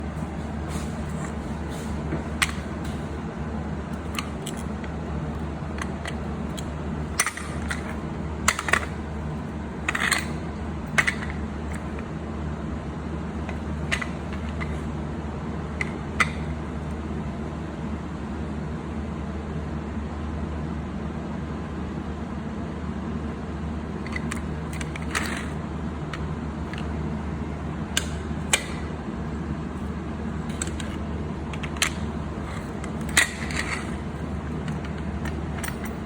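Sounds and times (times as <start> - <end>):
steady low hum: 0.0 - 36.0
metal parts clinking: 30.5 - 36.0.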